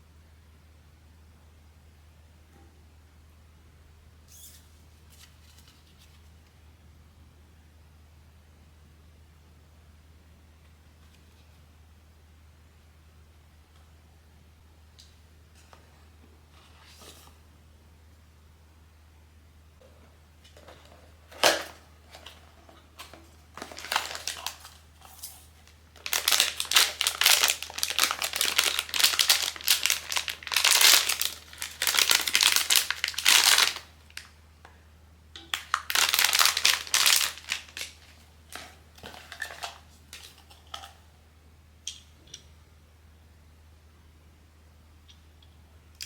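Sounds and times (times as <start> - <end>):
packaging crinkling: 20.6 - 34.3, 35.5 - 40.9.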